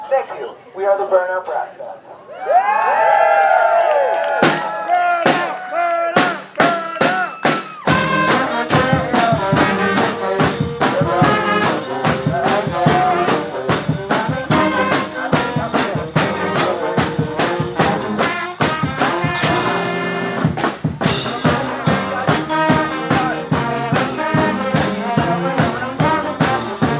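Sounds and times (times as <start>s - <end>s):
brass band playing: 6.2s - 26.9s.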